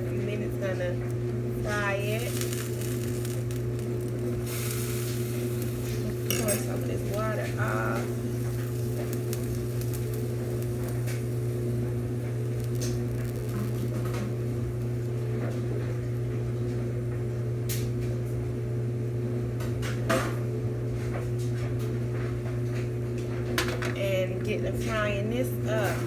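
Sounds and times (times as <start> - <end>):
steady low hum: 0.0 - 26.0
pan and utensils clinking: 5.8 - 8.7.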